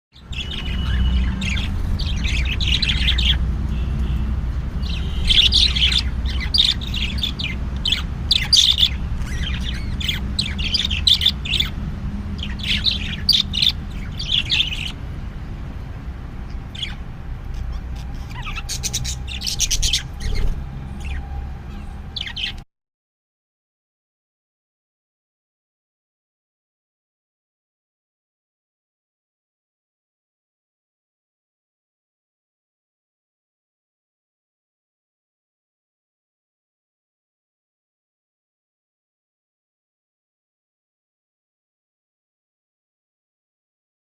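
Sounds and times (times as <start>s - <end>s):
parrot squawking and chirping: 0.2s - 3.5s, 4.8s - 15.0s, 16.5s - 22.6s.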